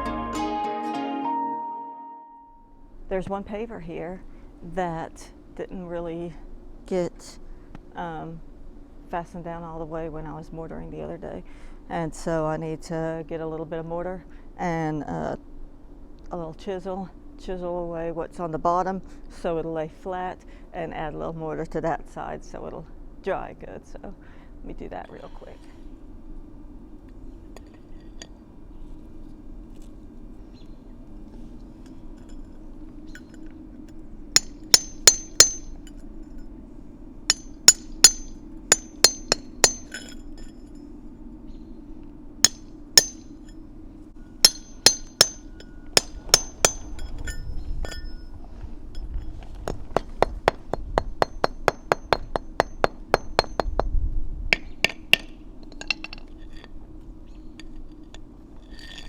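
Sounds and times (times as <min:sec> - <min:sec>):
chisel clinking on mortar: 0:34.4 - 0:35.9, 0:37.3 - 0:40.6, 0:42.4 - 0:43.3, 0:44.4 - 0:48.4, 0:49.0 - 0:53.9, 0:54.6 - 0:56.7.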